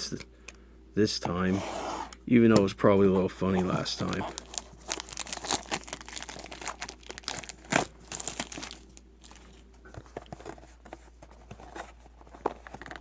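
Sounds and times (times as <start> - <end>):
plastic packaging crinkling and tearing: 3.5 - 9.7.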